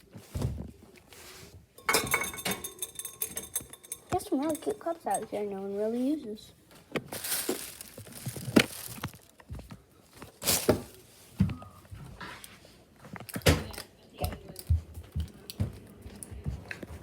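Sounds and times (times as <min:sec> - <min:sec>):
household objects being handled: 0:00.0 - 0:13.4.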